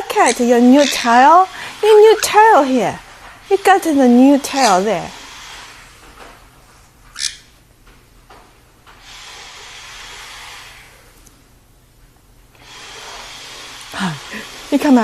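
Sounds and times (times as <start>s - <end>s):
soft hissing noise: 0.0s - 7.6s, 8.8s - 15.0s
parrot chirp: 0.2s - 2.4s, 7.1s - 7.5s.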